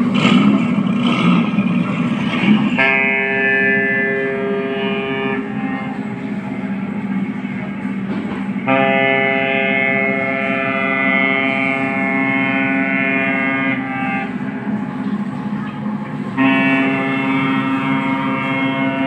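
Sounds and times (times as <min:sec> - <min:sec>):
steady engine hum: 0:00.0 - 0:19.0
horn effect through small speaker: 0:02.7 - 0:06.7, 0:08.6 - 0:14.8, 0:16.4 - 0:19.0.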